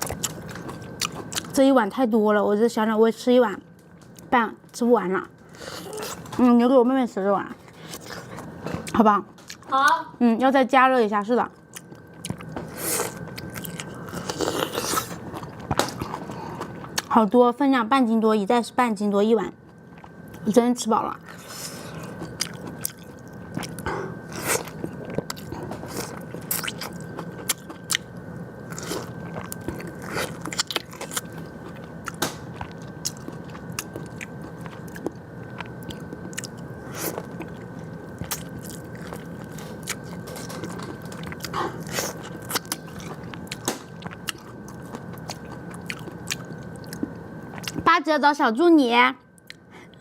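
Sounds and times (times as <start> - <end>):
wet chewing with mouth clicks: 28.7 - 47.8.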